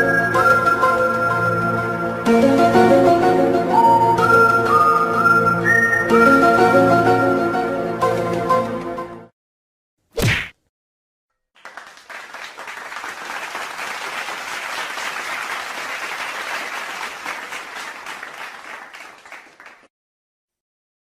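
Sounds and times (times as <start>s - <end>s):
crowd applause: 11.6s - 19.9s.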